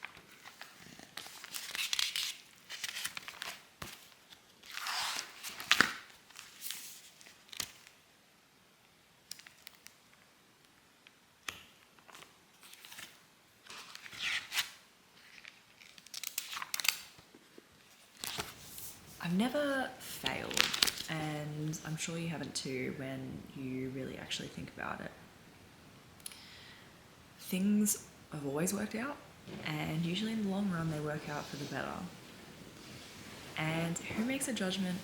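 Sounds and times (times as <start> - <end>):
rustling and crinkling handling noises: 0.0 - 8.0, 11.9 - 21.9, 28.6 - 35.0.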